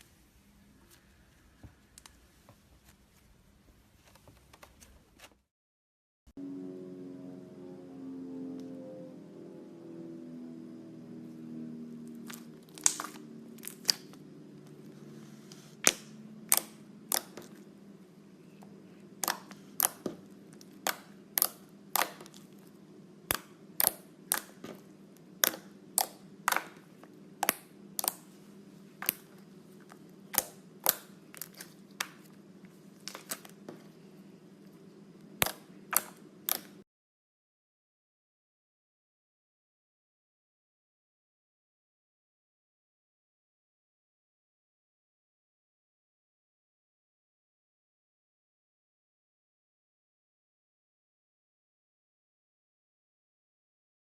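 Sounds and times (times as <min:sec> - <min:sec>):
faint low hum: 0:00.0 - 0:05.4, 0:06.4 - 0:36.8
slime clicking pops: 0:12.8 - 0:14.1, 0:25.4 - 0:26.7, 0:27.4 - 0:28.2, 0:35.4 - 0:36.7.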